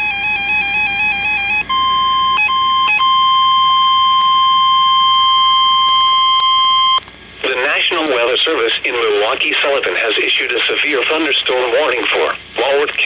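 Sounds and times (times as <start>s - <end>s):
steady electronic alarm tone: 0.0s - 7.0s.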